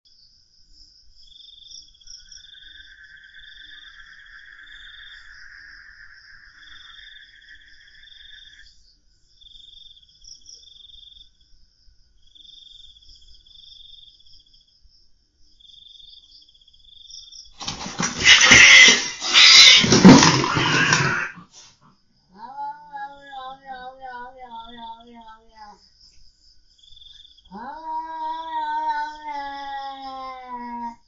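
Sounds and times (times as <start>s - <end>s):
night chorus chirping: 1.2s - 11.4s, 23.1s - 27.8s
cat fight: 17.6s - 25.8s, 27.4s - 31.0s.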